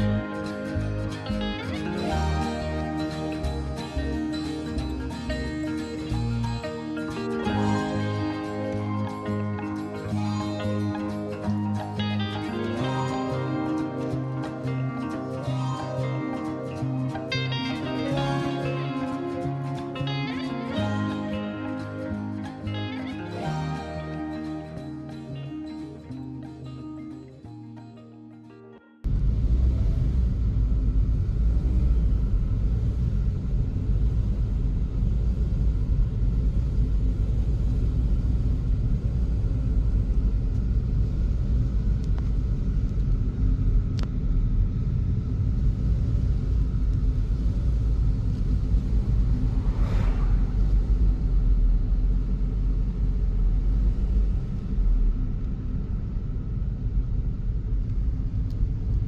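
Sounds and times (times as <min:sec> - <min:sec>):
vehicle engine and road noise: 0:00.0 - 0:26.8, 0:29.0 - 0:59.0.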